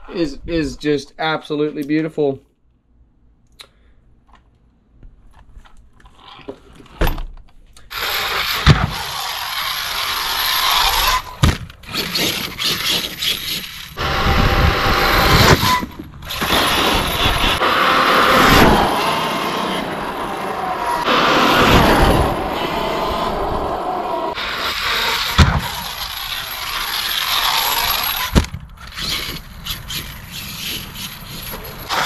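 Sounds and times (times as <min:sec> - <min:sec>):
rc truck motor whine: 0:07.9 - 0:32.0.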